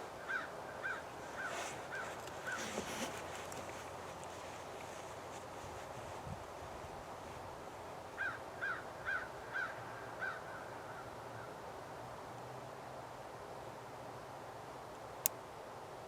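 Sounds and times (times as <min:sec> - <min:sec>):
bird calling harshly: 0:00.3 - 0:03.1.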